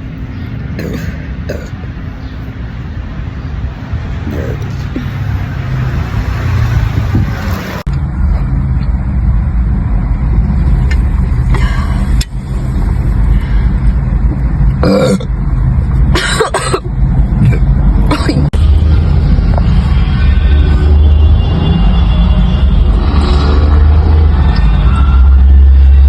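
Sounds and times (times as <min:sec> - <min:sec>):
woman burping: 0:00.8 - 0:01.8, 0:14.8 - 0:15.3
low rumble: 0:03.0 - 0:16.2, 0:16.9 - 0:26.0.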